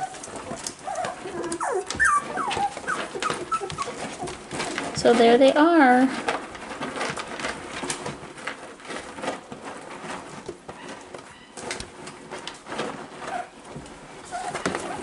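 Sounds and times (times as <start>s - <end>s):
puppies whimpering: 0.0s - 4.8s, 14.2s - 15.0s
puppies scrabbling and shuffling: 0.0s - 15.0s.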